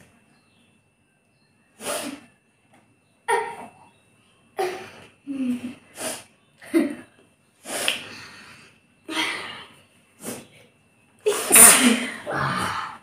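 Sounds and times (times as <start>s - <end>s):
people sneezing: 11.2s - 12.4s.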